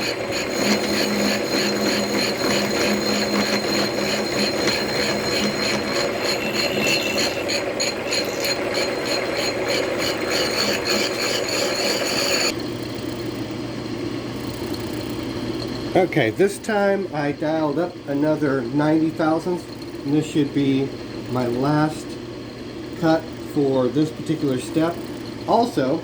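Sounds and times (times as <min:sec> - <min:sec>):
milling cutter chattering on metal: 0:00.0 - 0:12.6
milling machine motor hum: 0:00.0 - 0:26.0.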